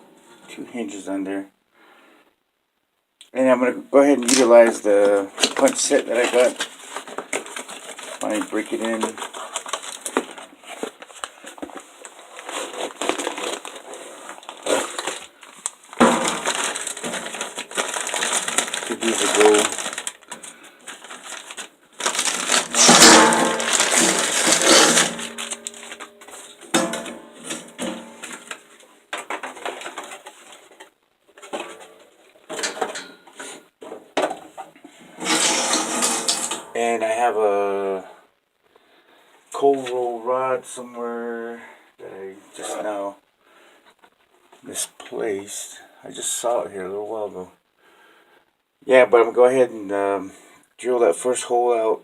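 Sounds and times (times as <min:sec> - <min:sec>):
loud clatter: 0:22.0 - 0:26.0, 0:35.2 - 0:36.7.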